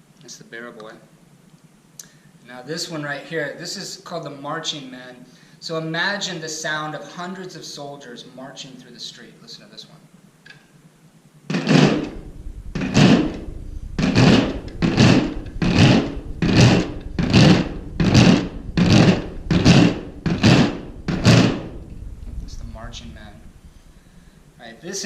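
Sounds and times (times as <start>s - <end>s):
marching sound effect clatter: 11.5s - 24.5s.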